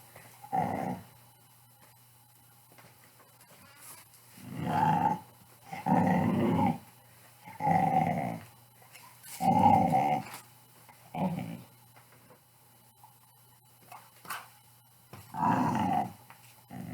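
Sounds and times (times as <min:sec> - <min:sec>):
dog growling: 0:00.4 - 0:01.1, 0:04.4 - 0:06.8, 0:07.5 - 0:08.5, 0:09.4 - 0:10.4, 0:11.1 - 0:11.7, 0:15.3 - 0:16.9.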